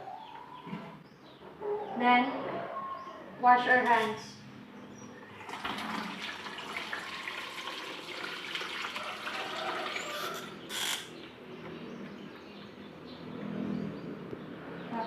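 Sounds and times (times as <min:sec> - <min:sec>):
water running from a tap: 0:05.4 - 0:10.4.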